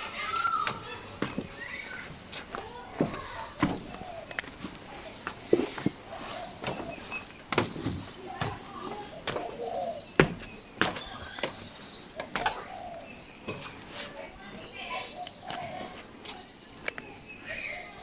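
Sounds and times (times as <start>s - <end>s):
footsteps on a path: 0.0s - 12.5s
birds calling: 0.0s - 18.0s.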